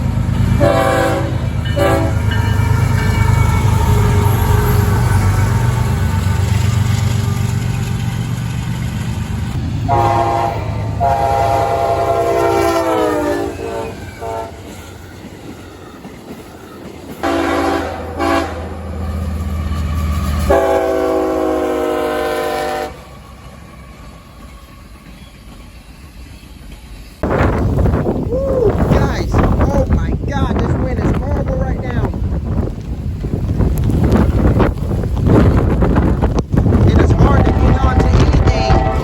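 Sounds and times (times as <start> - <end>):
rumble of passing train: 0.0 - 39.0
locomotive horn blasts: 0.6 - 5.2, 9.8 - 14.7, 17.2 - 18.8, 20.4 - 23.1, 37.0 - 39.0.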